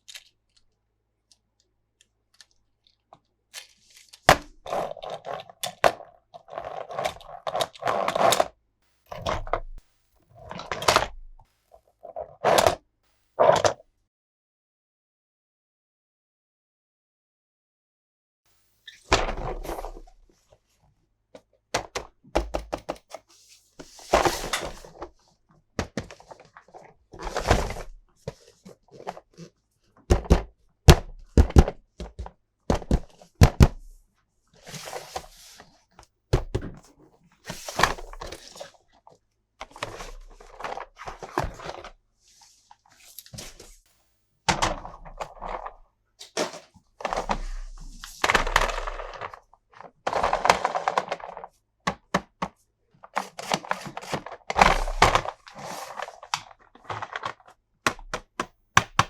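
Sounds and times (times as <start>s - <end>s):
plastic toys knocking and clicking: 21.8s - 23.2s, 30.1s - 33.8s.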